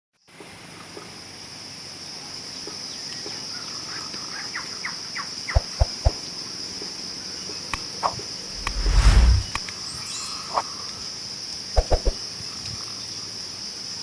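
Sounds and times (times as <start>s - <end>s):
insect drone: 1.3s - 14.0s.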